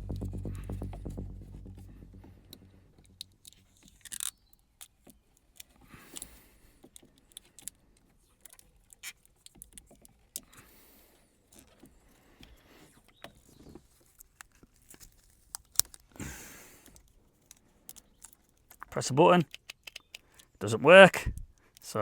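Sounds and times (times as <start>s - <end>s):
background music: 0.0s - 3.4s
tape wrapping clicks and rustles: 2.2s - 10.6s, 11.5s - 20.6s.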